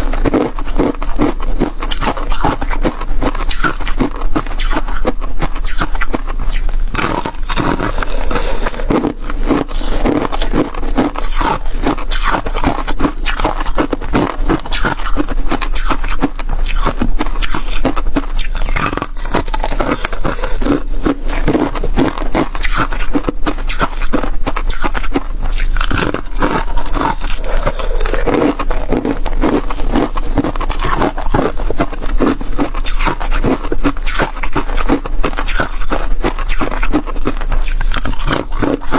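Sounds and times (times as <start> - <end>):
chewing crunchy ice: 0.0 - 38.9.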